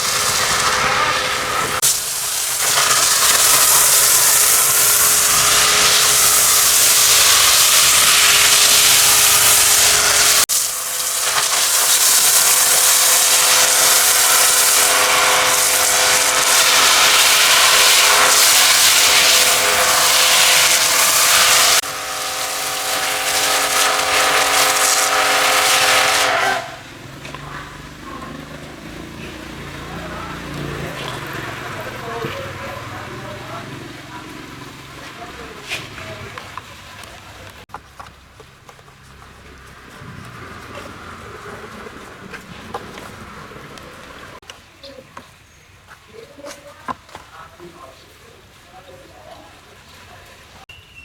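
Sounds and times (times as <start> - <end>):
pressure washer water jet hiss: 0.0 - 27.4
pump whine: 0.0 - 37.4.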